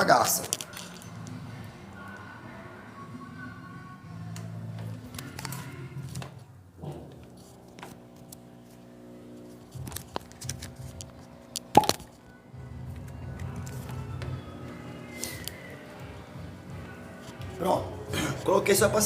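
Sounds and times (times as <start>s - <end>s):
background music sustained tones: 11.0s - 19.0s.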